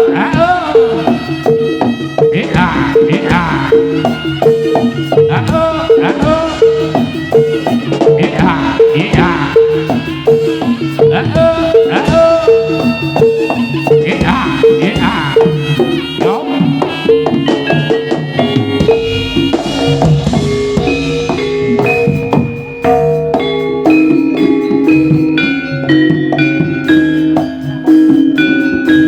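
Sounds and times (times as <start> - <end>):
drum strokes: 0.0 - 29.0
high melody bending in pitch: 0.0 - 29.0
metallophone and gong-chime notes: 8.5 - 29.0.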